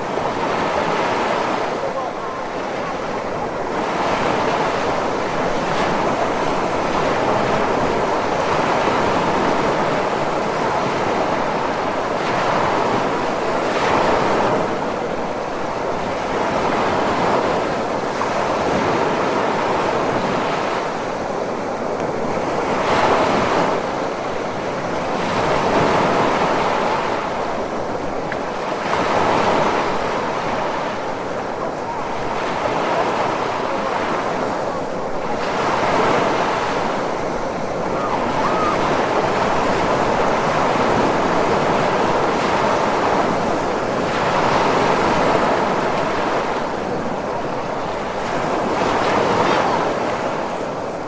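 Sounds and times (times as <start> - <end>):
ocean waves breaking: 0.0 - 51.0.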